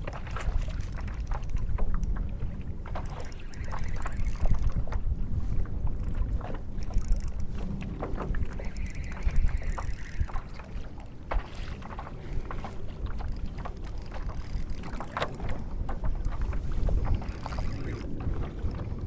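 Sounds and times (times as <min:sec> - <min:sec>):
clicks and knocks from hull: 0:00.0 - 0:05.0, 0:05.6 - 0:19.0
wind buffeting microphone: 0:00.0 - 0:19.0.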